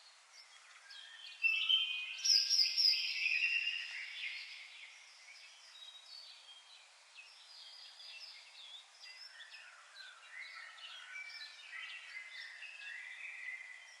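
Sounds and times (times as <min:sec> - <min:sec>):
light steady hiss: 0:00.0 - 0:14.0
small birds chirping and singing: 0:00.0 - 0:14.0.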